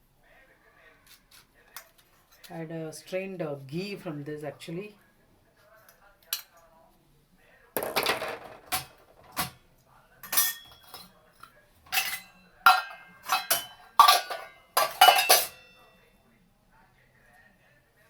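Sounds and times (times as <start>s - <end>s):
dishes and utensils clinking: 10.2s - 15.9s.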